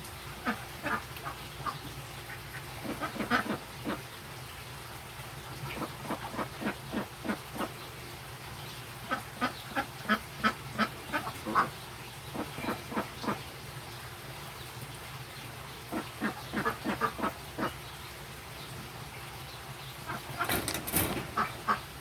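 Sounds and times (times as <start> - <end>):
ducks quacking: 0.4 - 4.1, 5.6 - 7.8, 9.0 - 13.6, 15.8 - 17.8, 19.9 - 20.4, 21.3 - 22.0.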